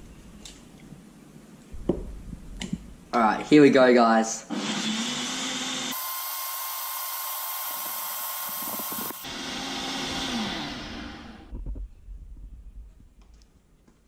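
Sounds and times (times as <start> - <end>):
electric blender motor running: 4.5 - 11.5.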